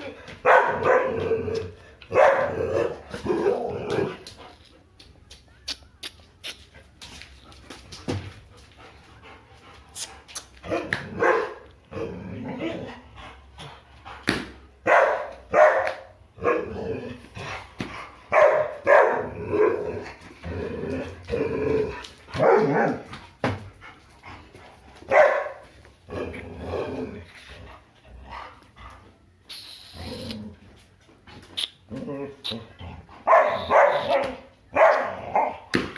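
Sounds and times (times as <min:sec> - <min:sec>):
dog barking and whining: 0:00.4 - 0:04.2, 0:10.6 - 0:13.0, 0:14.8 - 0:17.1, 0:18.3 - 0:20.1, 0:20.8 - 0:23.1, 0:25.0 - 0:25.7, 0:32.0 - 0:35.7.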